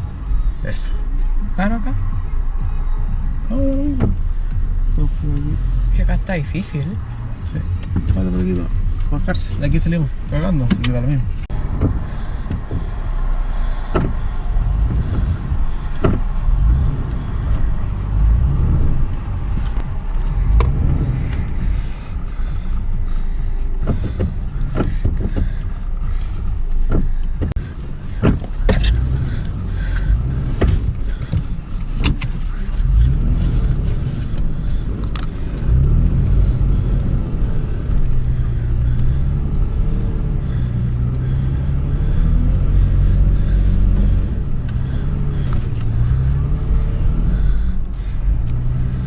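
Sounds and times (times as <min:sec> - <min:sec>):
low engine rumble: 0:00.0 - 0:49.0.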